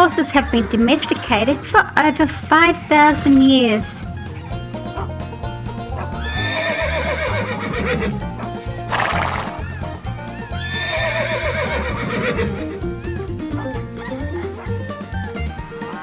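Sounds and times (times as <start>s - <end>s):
horse neighing: 0.0s - 16.0s
background music with beat: 1.7s - 16.0s
horse breathy burst: 4.1s - 10.1s, 10.8s - 13.2s.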